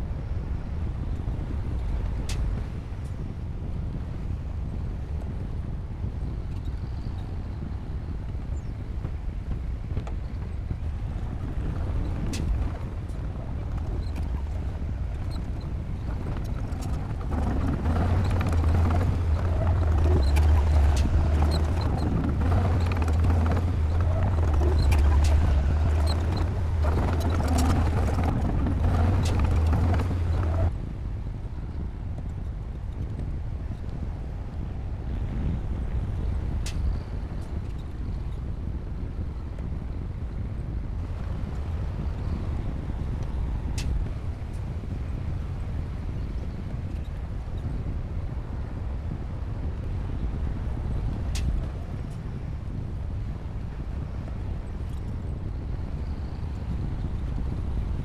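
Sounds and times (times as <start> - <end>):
bulldozer engine rumble: 10.5 - 30.7, 41.0 - 47.2
tracks and blade clanking: 15.2 - 30.7.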